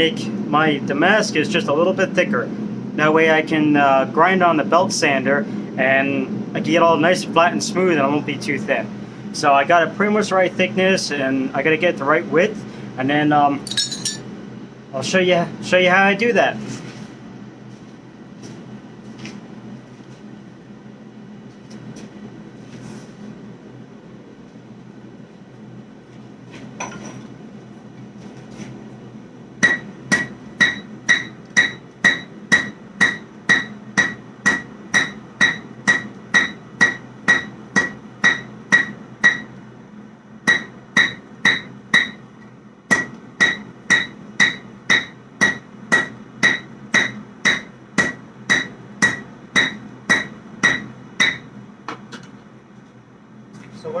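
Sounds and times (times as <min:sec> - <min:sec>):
steady low hum: 0:00.0 - 0:54.0
hammer ringing on hot steel: 0:29.6 - 0:39.5, 0:40.4 - 0:42.2, 0:42.9 - 0:51.5.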